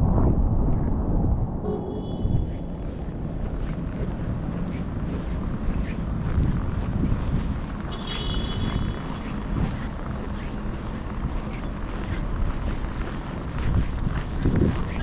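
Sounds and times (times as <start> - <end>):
wind buffeting microphone: 0.0 - 15.0
low rumble of street traffic: 0.6 - 15.0
high-pitched squeal: 1.7 - 3.2.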